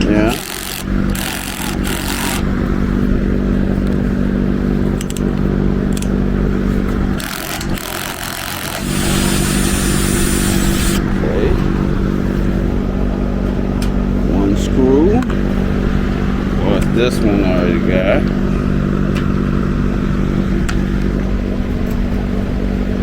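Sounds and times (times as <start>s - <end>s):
electric fan humming: 0.0s - 23.0s
light clicks and clatter: 4.8s - 8.8s.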